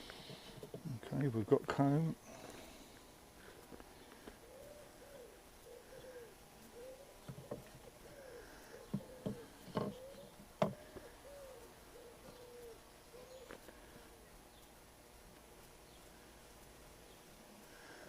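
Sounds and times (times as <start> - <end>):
dove cooing: 4.1 - 14.4.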